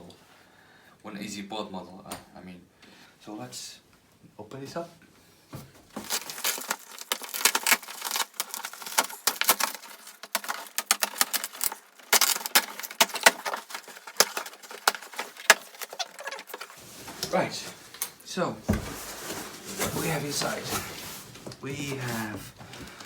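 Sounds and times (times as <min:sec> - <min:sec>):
packaging rustling and crackling: 0:05.8 - 0:23.0.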